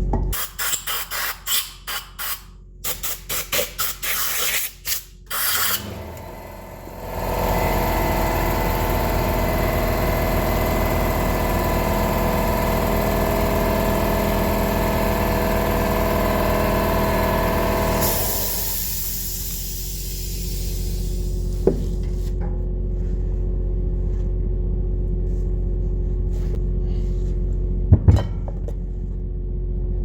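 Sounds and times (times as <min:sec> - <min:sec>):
hiss: 0:18.0 - 0:21.6.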